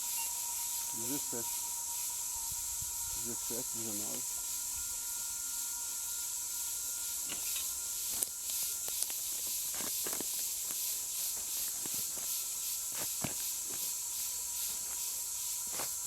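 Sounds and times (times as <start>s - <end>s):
faint metal detector tone: 0.0s - 10.8s
pulsing high hiss: 0.0s - 16.0s
tool scraping and knocking soil: 7.2s - 14.0s, 14.6s - 16.0s.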